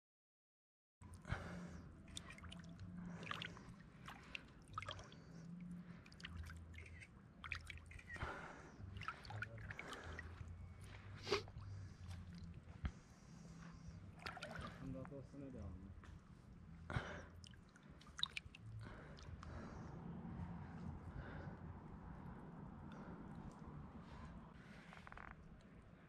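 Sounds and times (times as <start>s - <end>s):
low hum: 1.0s - 26.0s
water splashing and dripping: 1.4s - 15.4s, 17.2s - 19.8s.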